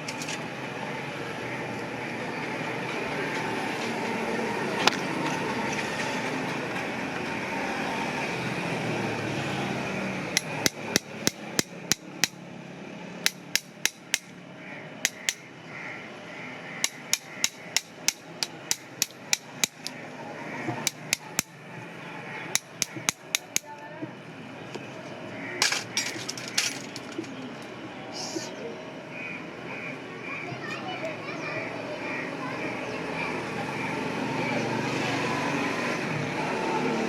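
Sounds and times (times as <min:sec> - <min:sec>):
hammer tapping: 0:10.4 - 0:12.4, 0:13.2 - 0:14.4, 0:15.0 - 0:15.5, 0:16.8 - 0:20.0, 0:20.7 - 0:21.6, 0:22.6 - 0:23.8.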